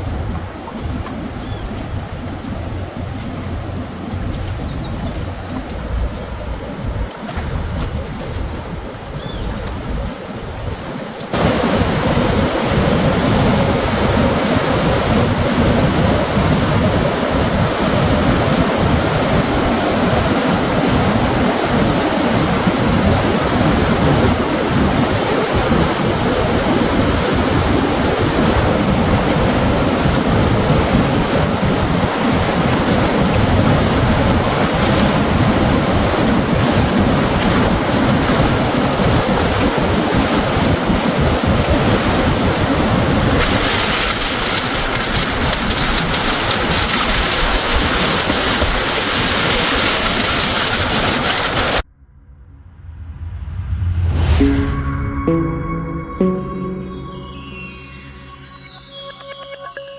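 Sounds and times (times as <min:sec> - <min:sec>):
rushing river rapids: 0:11.4 - 0:14.9
faint high chirps: 0:52.0 - 0:59.9.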